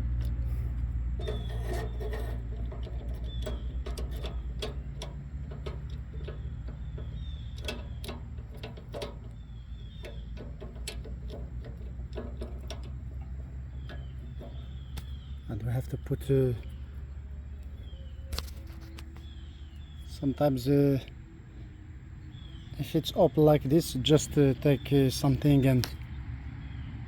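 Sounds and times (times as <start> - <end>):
metal parts clicking and tapping: 0.0 - 16.8
steady low hum: 0.0 - 26.2.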